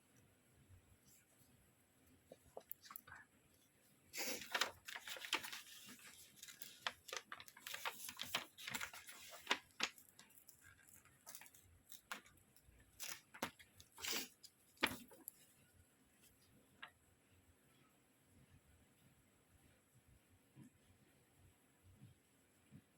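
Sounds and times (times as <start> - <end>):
packaging rustling and crinkling: 4.2 - 15.4.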